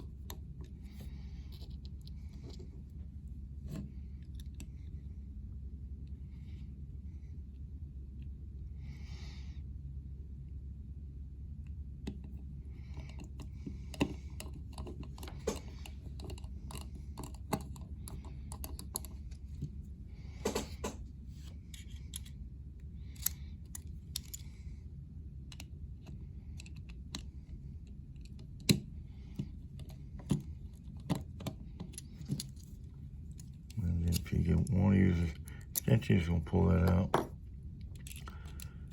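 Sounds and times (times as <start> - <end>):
steady low hum: 0.0 - 38.9
metal bits clicking and rattling: 13.9 - 19.2, 36.9 - 38.9.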